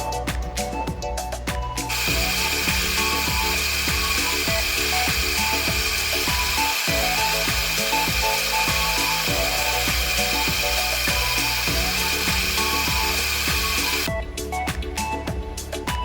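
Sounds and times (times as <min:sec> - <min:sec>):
background music: 0:00.0 - 0:16.0
pet dryer rushing hiss: 0:01.9 - 0:14.1.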